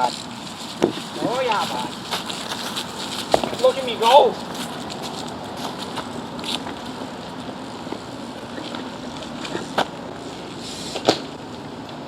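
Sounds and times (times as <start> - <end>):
bike tyres rumbling: 0.0 - 12.0.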